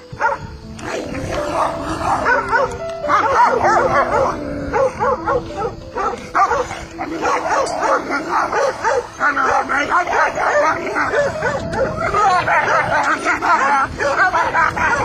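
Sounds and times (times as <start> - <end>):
background music: 0.0 - 15.0
dog yipping and whining: 10.1 - 12.9.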